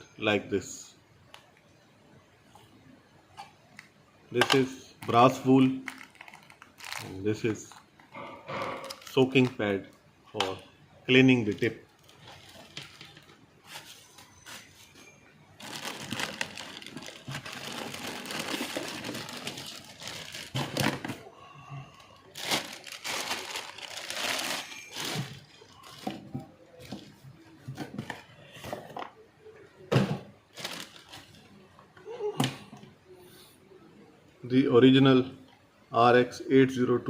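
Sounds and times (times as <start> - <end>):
packaging crinkling and rustling: 5.7 - 7.9, 8.7 - 9.7, 11.3 - 21.2, 22.2 - 27.2, 30.5 - 31.4.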